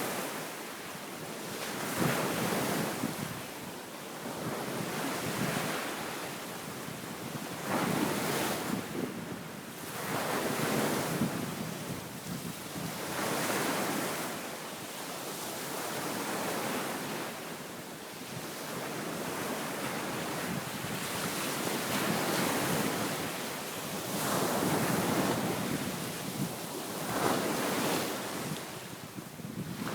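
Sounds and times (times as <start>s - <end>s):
waves breaking on a beach: 0.0s - 29.9s
wind buffeting the microphone: 6.7s - 14.2s, 18.3s - 29.9s.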